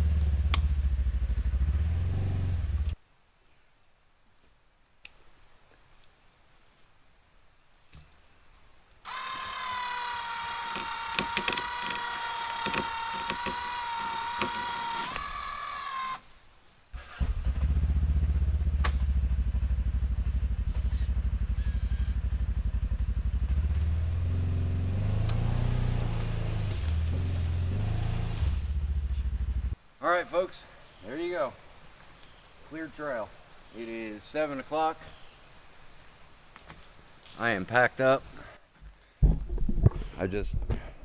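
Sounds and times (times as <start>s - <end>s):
vehicle engine rumbling: 0.0s - 3.0s, 17.0s - 29.8s
electric winch motor whining: 9.1s - 16.2s.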